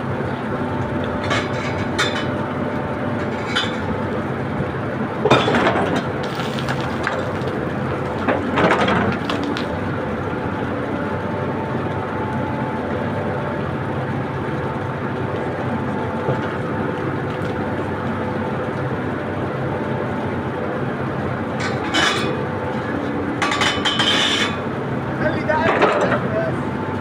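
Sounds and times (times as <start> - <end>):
heavy machine engine running: 0.0 - 27.0
clanking and cracking: 5.3 - 9.8, 25.6 - 26.2.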